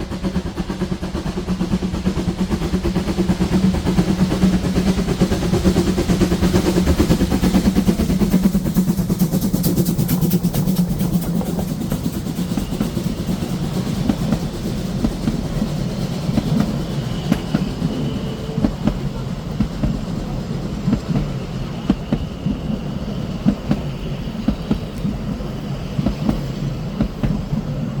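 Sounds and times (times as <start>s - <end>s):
train low rumble: 0.0s - 28.0s
train wheels clicking over rail joints: 0.0s - 28.0s.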